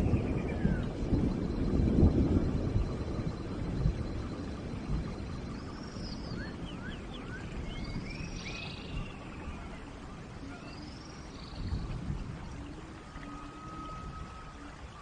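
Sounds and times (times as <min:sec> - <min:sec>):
steady rain in forest: 0:00.0 - 0:15.0
birds calling: 0:03.1 - 0:15.0.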